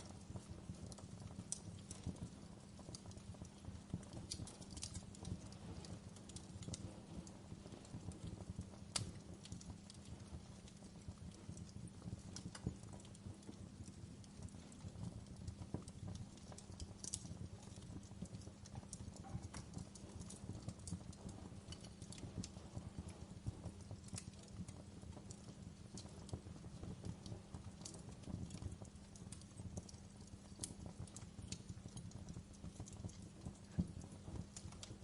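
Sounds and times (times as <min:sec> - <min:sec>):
fire crackling: 0:00.0 - 0:35.0.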